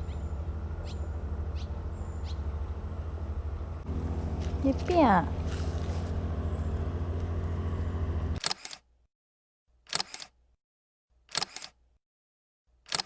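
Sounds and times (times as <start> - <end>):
steady low hum: 0.0 - 8.4
camera shutter double clicks: 8.4 - 8.9, 9.9 - 10.4, 11.3 - 11.8.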